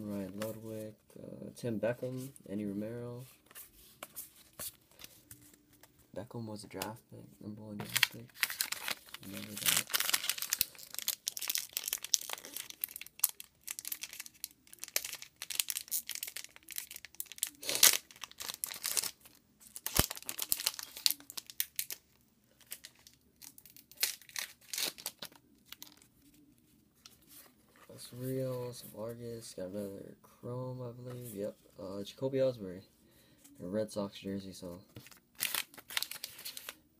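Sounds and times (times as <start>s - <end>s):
cards being handled: 7.8s - 10.7s, 34.9s - 36.8s
wrapper crinkling and tearing: 7.8s - 26.4s, 35.0s - 36.8s.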